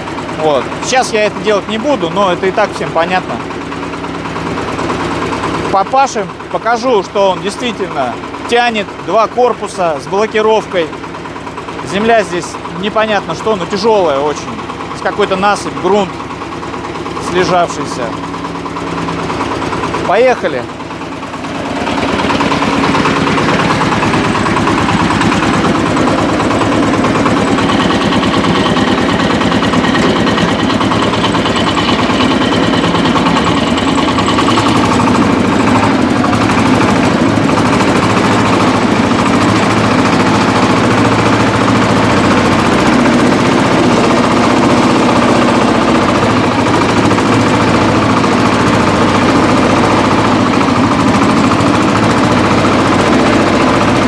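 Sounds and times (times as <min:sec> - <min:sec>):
tractor diesel engine running: 0:00.0 - 0:54.0.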